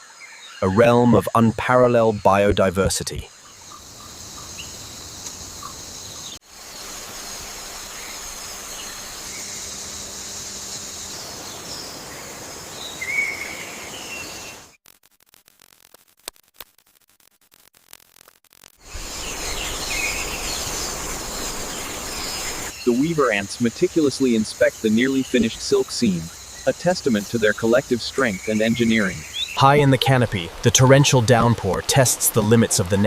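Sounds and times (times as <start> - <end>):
high insect drone: 3.3 - 14.7, 18.8 - 33.0.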